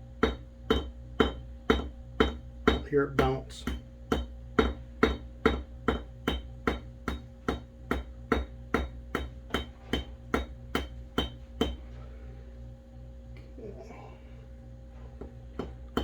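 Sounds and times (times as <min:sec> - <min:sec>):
hammer tapping on anvil: 0:00.2 - 0:11.8, 0:15.2 - 0:16.0.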